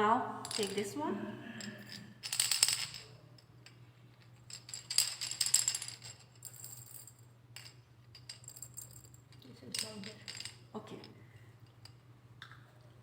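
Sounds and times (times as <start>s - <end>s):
cylinders rattling when shaken: 0.4s - 1.0s, 1.6s - 3.2s, 4.3s - 10.6s.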